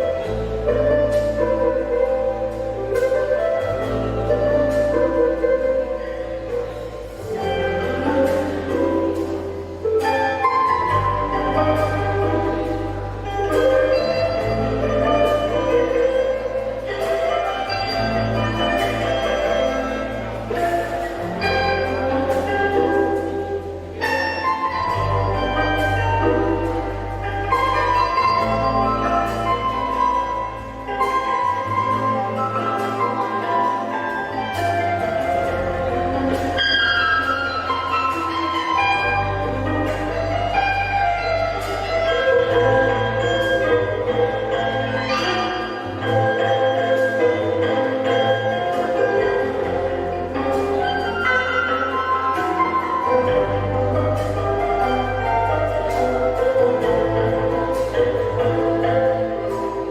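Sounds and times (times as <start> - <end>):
bass guitar: 0.0 - 59.9
drums: 0.0 - 59.9
guitar: 0.0 - 59.9
plucked tube zither: 0.0 - 59.9.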